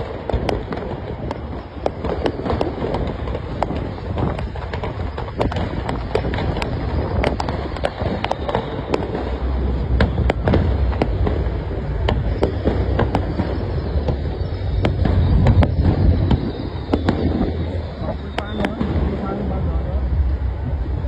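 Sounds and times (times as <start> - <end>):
fireworks cracking and banging: 0.0 - 21.0
low rumble: 0.2 - 21.0.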